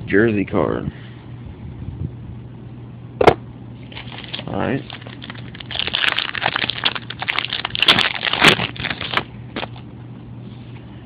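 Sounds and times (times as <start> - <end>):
foil wrapper crinkling and tearing: 3.9 - 9.8.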